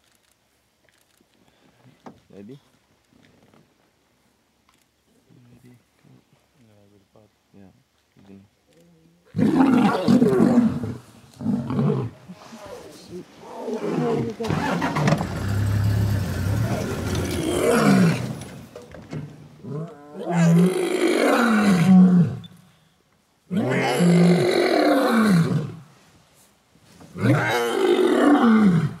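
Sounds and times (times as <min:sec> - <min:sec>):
loud roaring and growling: 0:09.4 - 0:12.2, 0:13.4 - 0:18.6, 0:19.6 - 0:22.4, 0:23.5 - 0:25.7, 0:27.2 - 0:29.0.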